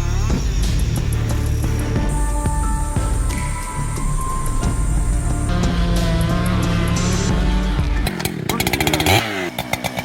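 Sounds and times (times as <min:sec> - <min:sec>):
background music: 0:00.0 - 0:10.0
chainsaw engine running: 0:04.4 - 0:10.0.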